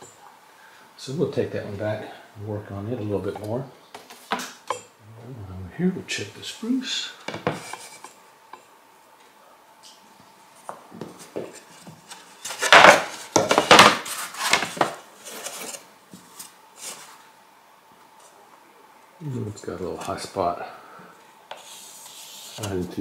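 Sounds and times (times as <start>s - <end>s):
wooden boards knocking and scraping: 7.3s - 7.9s, 11.0s - 15.0s
wooden boards clattering: 11.0s - 15.0s.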